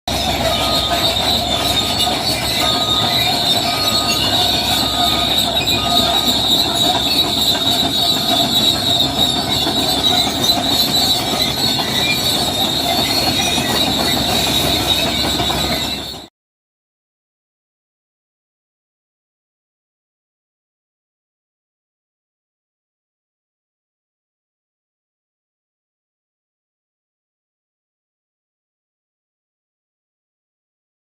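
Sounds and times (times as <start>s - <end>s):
bulldozer tracks squealing: 0.1s - 16.3s.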